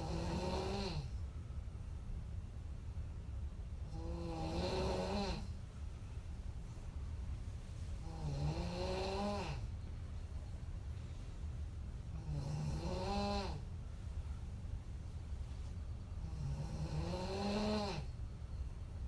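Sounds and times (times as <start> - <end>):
woman snoring: 0.0 - 1.2, 3.9 - 5.5, 8.0 - 9.7, 12.2 - 13.7, 16.2 - 18.1
steady low hum: 0.0 - 19.0.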